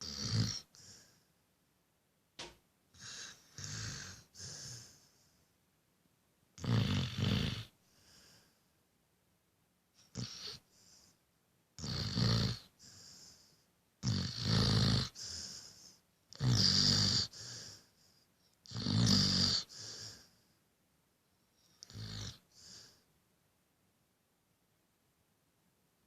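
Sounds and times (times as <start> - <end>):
dog snoring: 0.0 - 1.2, 2.9 - 5.2, 6.6 - 8.4, 10.0 - 11.1, 11.8 - 17.9, 18.6 - 20.3, 21.6 - 23.0.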